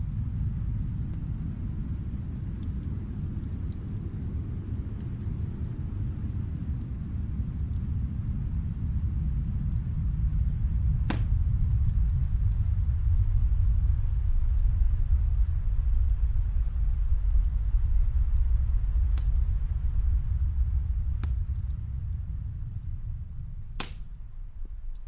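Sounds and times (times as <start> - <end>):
fire crackling in fireplace: 0.0 - 25.0
low rumble of storm wind: 0.0 - 25.0
sharp pop from fire: 11.1 - 11.4, 23.8 - 24.1.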